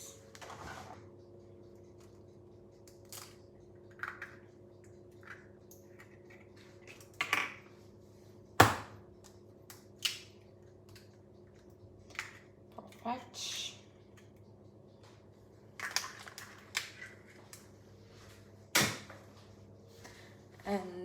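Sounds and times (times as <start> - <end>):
faint steady hum: 0.0 - 21.0
eggs cracking against a bowl: 15.8 - 17.7.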